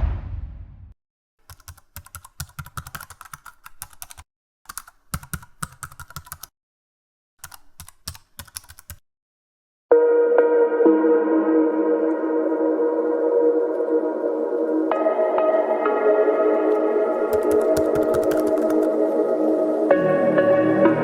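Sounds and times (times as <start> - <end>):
keyboard key clicks: 17.3 - 18.9.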